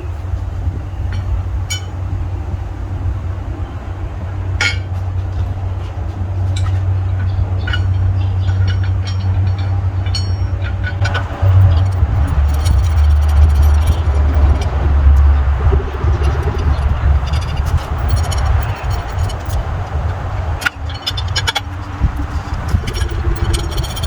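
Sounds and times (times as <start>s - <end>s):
low mechanical rumble: 0.0s - 24.0s
light clinks and knocks: 7.6s - 24.0s.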